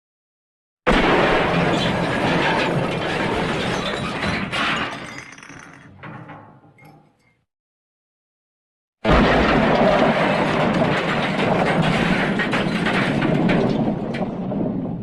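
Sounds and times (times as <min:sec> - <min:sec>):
glass smashing crash: 0:00.9 - 0:06.9
tinkling glass pieces: 0:04.9 - 0:05.9.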